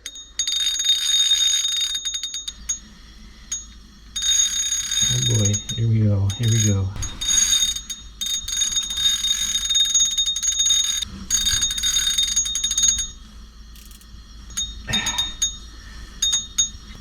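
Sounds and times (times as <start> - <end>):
fishing reel drag buzzing: 6.3 - 14.1.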